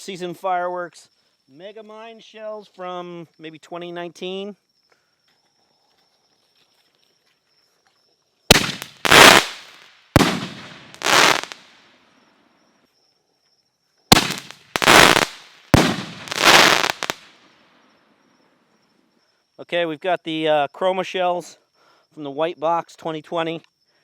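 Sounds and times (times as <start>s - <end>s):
firework shell bangs: 8.5s - 9.6s, 10.2s - 11.6s, 14.1s - 17.3s
firework blasts: 8.5s - 11.9s, 14.1s - 17.5s.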